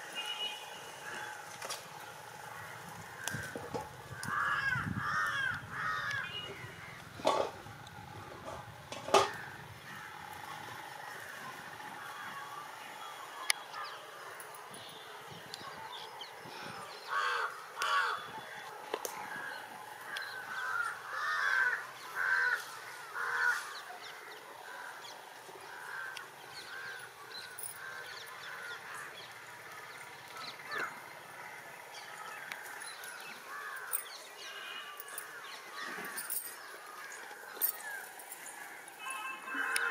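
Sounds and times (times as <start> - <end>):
birds calling: 1.2 - 7.6, 13.5 - 39.9.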